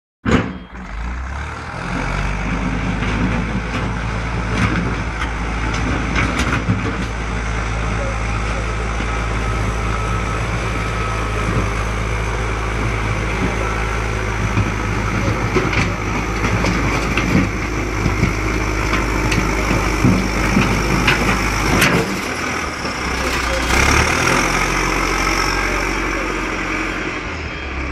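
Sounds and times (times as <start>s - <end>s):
diesel engine running: 0.3s - 27.9s
knocks and clatter: 2.4s - 7.2s, 14.4s - 24.4s.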